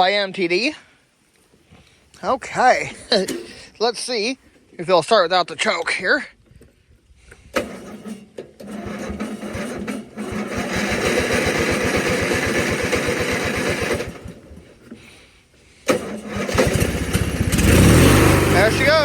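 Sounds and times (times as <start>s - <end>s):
electric starter cranking engine: 7.3s - 19.0s.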